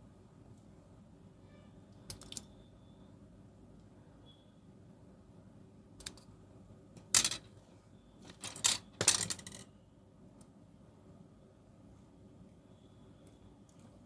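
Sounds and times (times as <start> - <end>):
small tools clattering on a hard surface: 7.0 - 7.5, 8.2 - 9.7.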